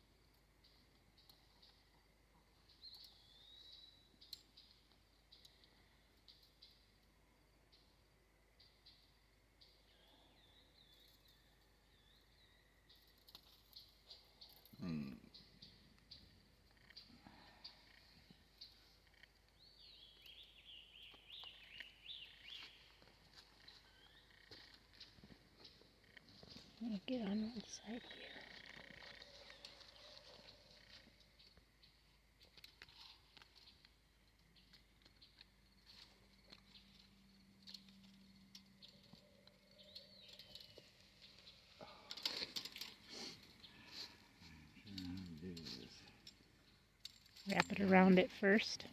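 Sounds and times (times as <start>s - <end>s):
songbird song: 0.0s - 48.9s
rustling and crackling handling noise: 40.2s - 44.4s.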